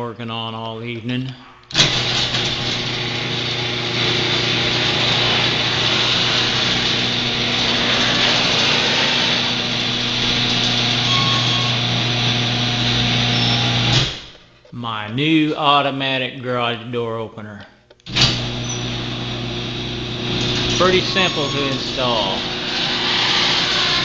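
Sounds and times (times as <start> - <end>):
garage door opener motor hum: 1.7 - 14.3, 18.1 - 24.0.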